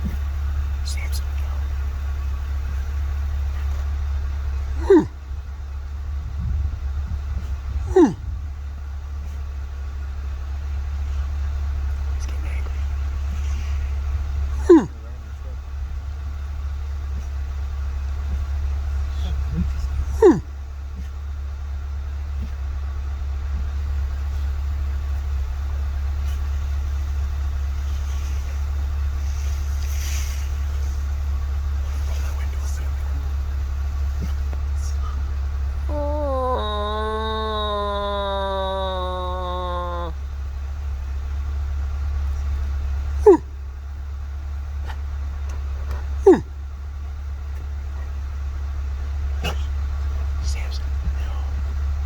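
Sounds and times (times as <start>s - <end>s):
vehicle engine idling: 0.0s - 52.0s
soft hiss: 26.0s - 35.6s
man imitating dinosaur screech: 35.8s - 40.2s, 43.2s - 43.4s, 46.2s - 46.4s.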